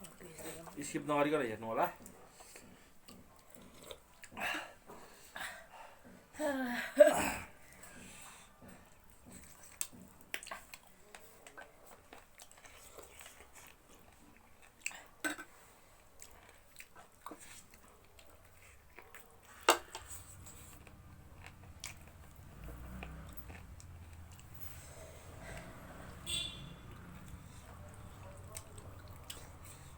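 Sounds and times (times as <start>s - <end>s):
chewing and biting: 2.0s - 4.5s, 7.9s - 26.2s, 26.8s - 29.9s.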